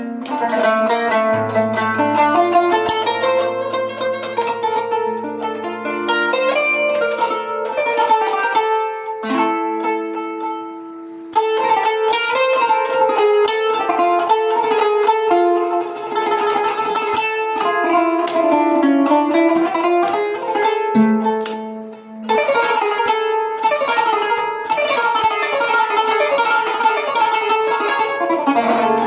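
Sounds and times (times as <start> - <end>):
plucked zither playing: 0.0 - 29.0.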